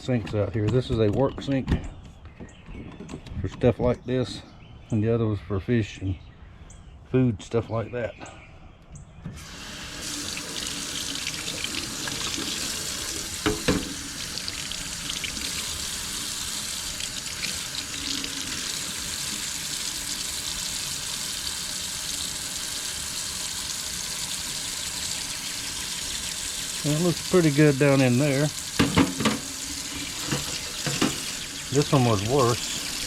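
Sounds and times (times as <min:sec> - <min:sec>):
water running from faucet: 0:09.4 - 0:33.0
knock: 0:13.4 - 0:14.0, 0:28.8 - 0:29.5.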